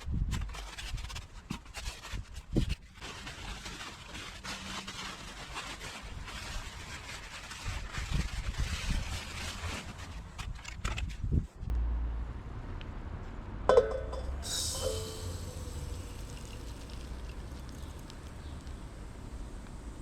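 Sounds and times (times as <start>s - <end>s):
sand screening machine running: 14.4s - 20.0s.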